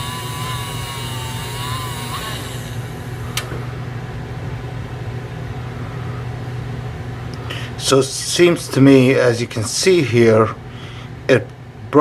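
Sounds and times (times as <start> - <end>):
sharpening wheel humming: 0.0 - 3.5
wavering high whine: 0.0 - 4.0.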